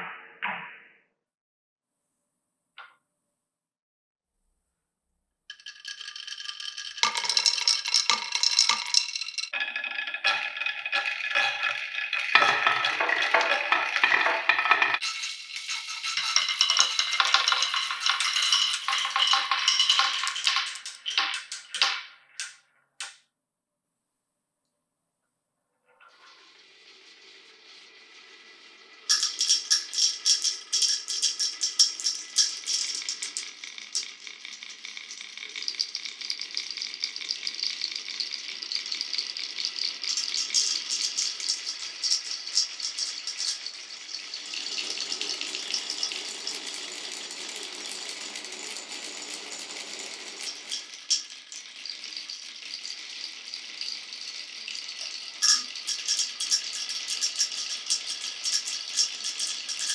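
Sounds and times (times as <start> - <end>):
marbles clattering down wooden run: 5.5 - 22.0, 40.1 - 52.5.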